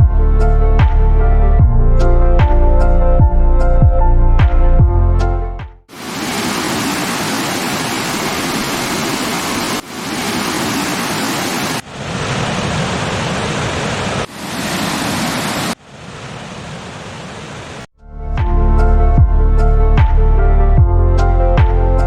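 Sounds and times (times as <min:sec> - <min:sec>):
waterfall rushing: 0:05.9 - 0:17.9.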